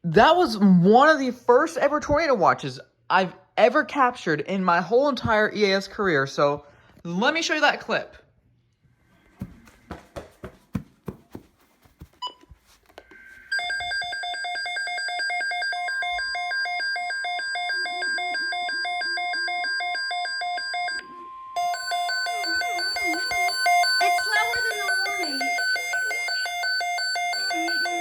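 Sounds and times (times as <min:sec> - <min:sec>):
rapid electronic alarm beeping: 0:13.5 - 0:28.0.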